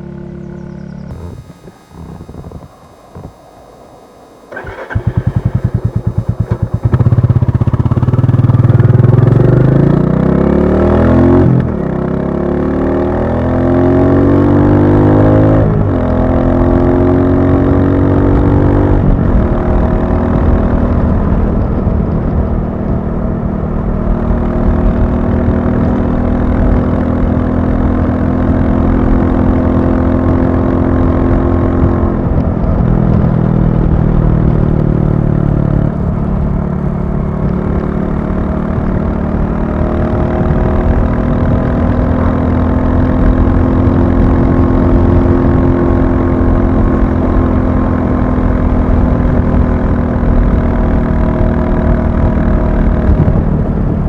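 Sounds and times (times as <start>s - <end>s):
motorcycle engine thumping: 4.1s - 10.0s.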